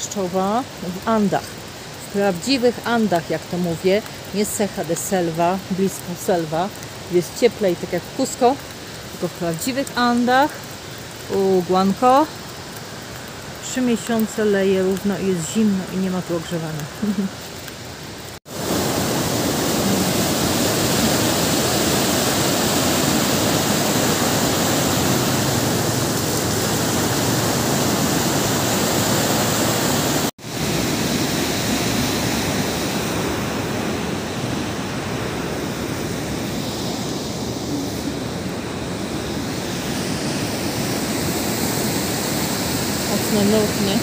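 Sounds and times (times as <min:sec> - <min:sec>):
river water rushing: 0:16.2 - 0:44.0.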